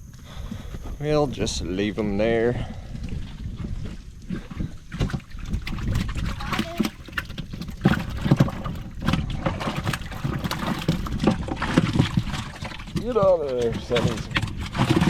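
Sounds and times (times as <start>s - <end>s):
irregular knocks and thumps: 3.0s - 15.0s.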